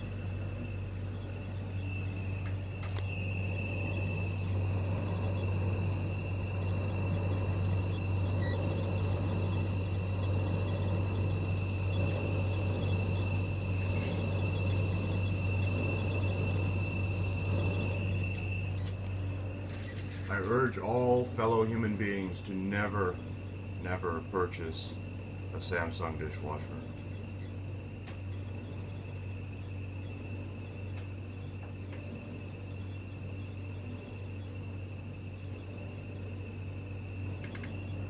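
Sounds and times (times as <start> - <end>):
dishwasher hum: 0.0 - 38.0
high-pitched whine: 0.0 - 38.0
faint clicks: 37.4 - 37.8.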